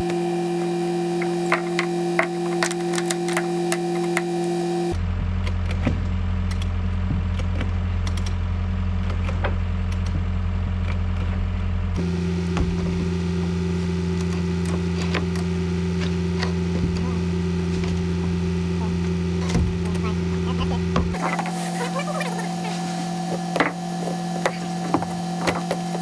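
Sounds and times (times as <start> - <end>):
clicks and knocks: 0.0 - 5.0
excavator engine running: 0.0 - 8.2, 8.8 - 26.0.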